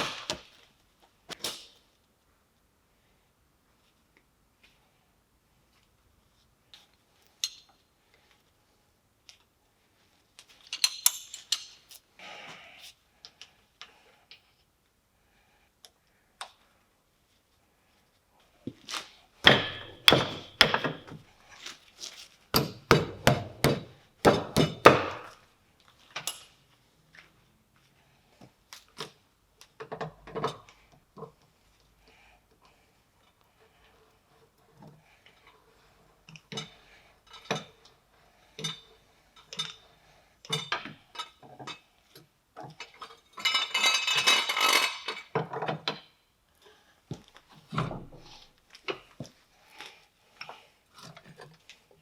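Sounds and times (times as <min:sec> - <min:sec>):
metal parts knocking and clanking: 0:19.4 - 0:21.2, 0:42.8 - 0:46.0.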